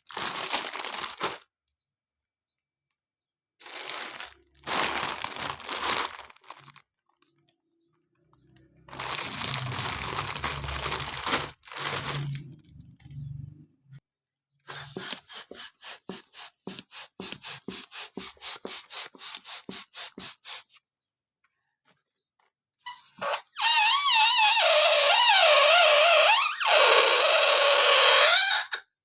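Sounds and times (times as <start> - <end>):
balloon neck squealing: 8.9 - 12.8, 22.8 - 28.8
hand balloon pump puffing: 14.7 - 20.8, 22.9 - 28.8.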